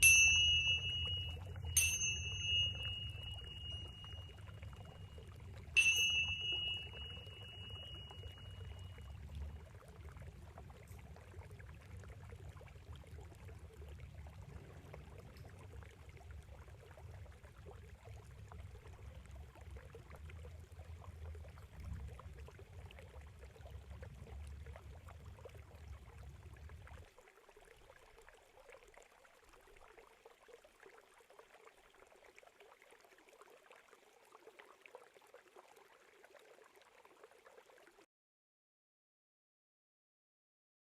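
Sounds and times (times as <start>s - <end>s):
high chime ringing: 0.0s - 5.2s, 5.8s - 9.1s
water trickling and pouring: 0.0s - 38.1s.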